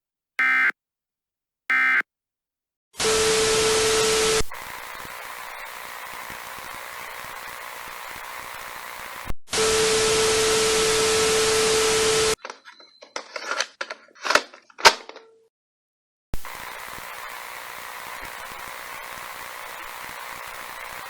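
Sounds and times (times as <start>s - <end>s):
loud tv static with hum: 3.1s - 12.4s, 16.4s - 21.0s.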